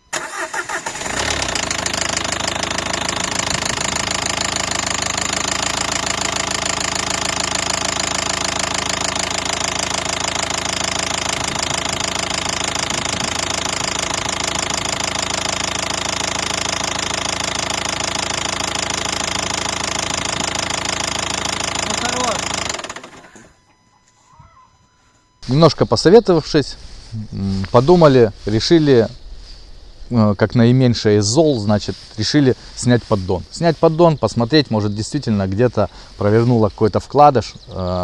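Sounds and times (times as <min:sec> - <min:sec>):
diesel engine idling: 0:00.1 - 0:23.6
light engine knocking: 0:01.4 - 0:23.2.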